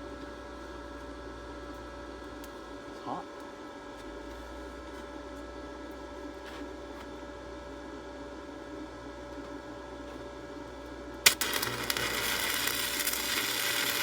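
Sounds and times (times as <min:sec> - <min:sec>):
steady hum: 0:10.5 - 0:14.0
stick welding crackle and sizzle: 0:11.2 - 0:14.0
welding arc striking crack: 0:11.2 - 0:14.0.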